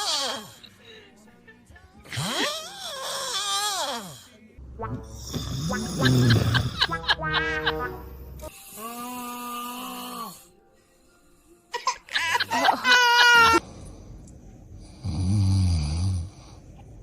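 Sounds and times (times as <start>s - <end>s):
loud rattling snore: 14.9s - 16.4s.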